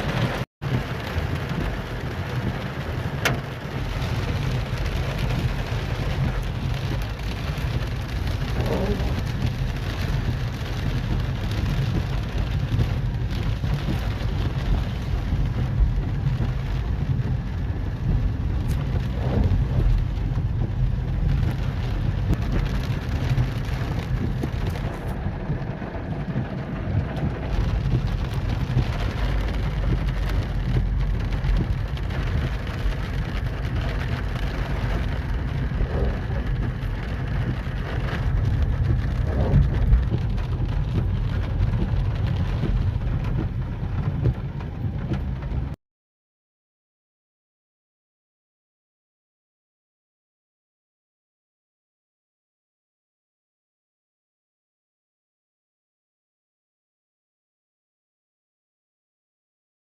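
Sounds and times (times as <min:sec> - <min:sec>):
heavy rain pouring: 0:00.0 - 0:45.8.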